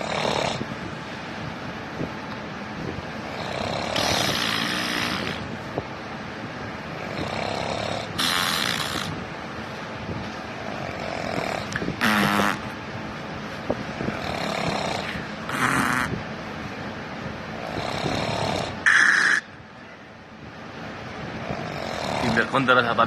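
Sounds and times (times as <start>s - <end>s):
person snoring heavily: 0.0s - 0.7s, 3.3s - 5.5s, 7.0s - 9.2s, 10.6s - 12.7s, 14.1s - 16.2s, 17.6s - 19.4s, 21.4s - 22.5s
steady background noise: 0.0s - 23.0s.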